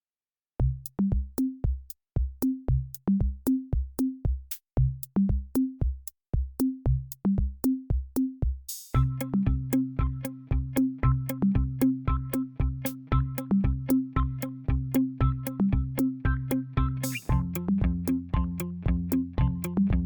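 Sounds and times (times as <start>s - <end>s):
electronic music with drum machine: 9.0s - 20.0s.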